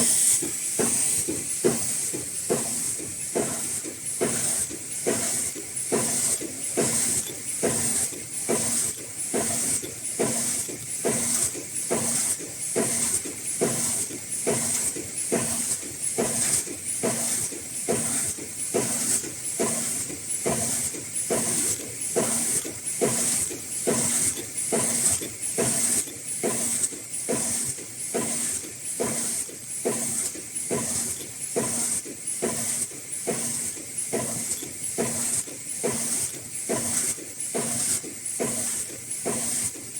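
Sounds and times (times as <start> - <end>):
production line machine clacking: 0.0 - 39.9
pulsing machine hiss: 0.0 - 39.9.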